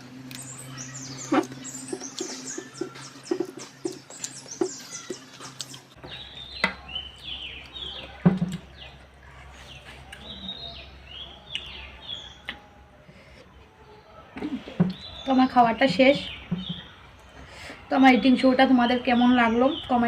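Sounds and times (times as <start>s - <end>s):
person chewing and lip smacking: 1.4s - 6.0s.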